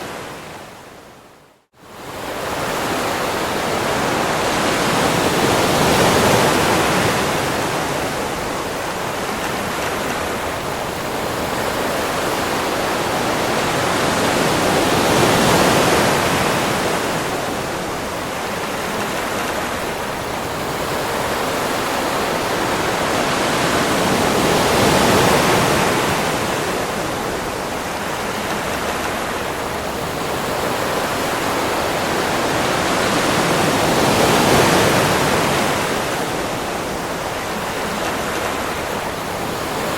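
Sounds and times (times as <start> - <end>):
sea waves washing onto beach: 1.7 - 39.9.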